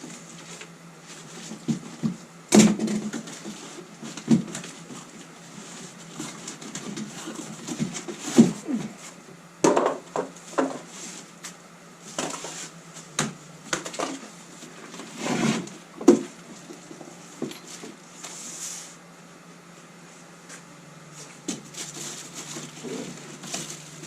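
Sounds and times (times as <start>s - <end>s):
cardboard rustling: 21.5s - 24.0s.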